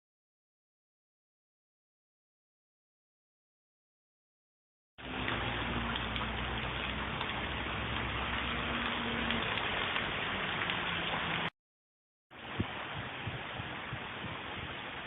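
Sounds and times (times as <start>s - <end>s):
heavy rain falling: 5.0s - 11.5s, 12.4s - 15.0s.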